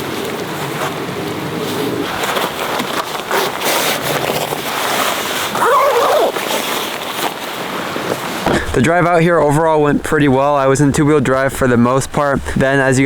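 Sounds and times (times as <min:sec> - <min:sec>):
nylon jacket rustling: 0:01.6 - 0:08.4.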